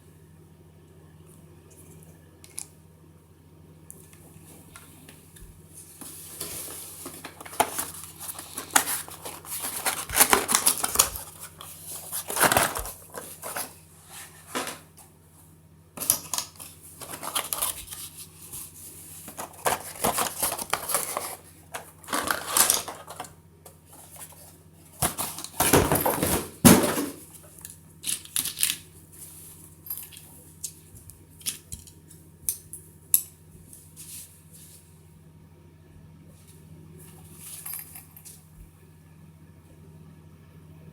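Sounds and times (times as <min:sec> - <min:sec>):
plastic packaging rustling: 0:05.8 - 0:15.0, 0:16.0 - 0:30.6.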